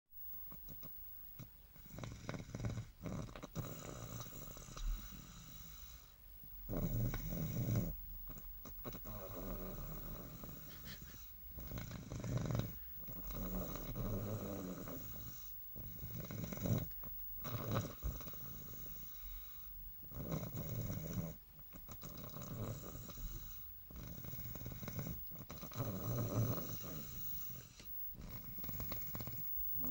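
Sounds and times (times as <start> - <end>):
child snoring: 1.4 - 6.1, 6.7 - 29.9.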